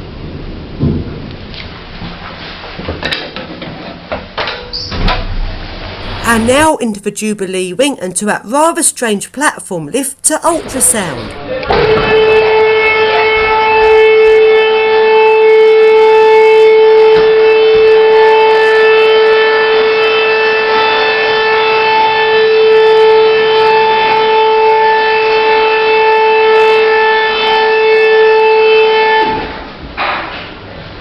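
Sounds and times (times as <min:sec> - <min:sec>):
lift warning buzzer: 0:06.0 - 0:29.6.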